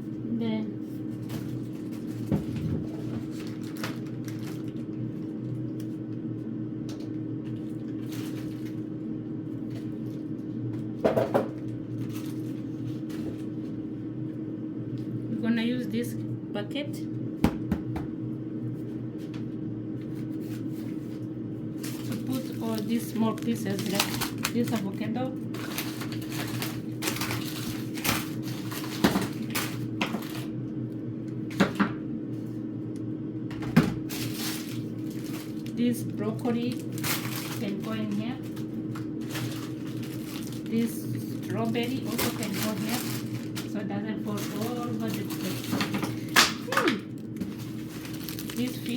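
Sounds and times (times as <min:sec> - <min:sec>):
fridge humming: 0:00.0 - 0:48.9
food packages rustling: 0:01.1 - 0:06.0, 0:07.0 - 0:08.8, 0:11.9 - 0:13.8, 0:20.1 - 0:30.5, 0:34.1 - 0:48.9.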